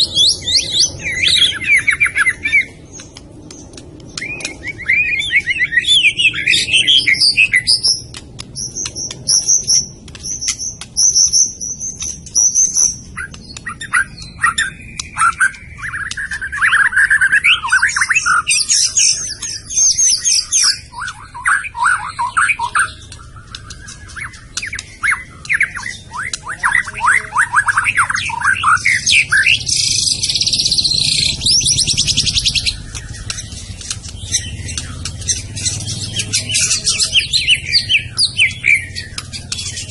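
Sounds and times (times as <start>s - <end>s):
songbird whistling and trilling: 0.0s - 39.9s.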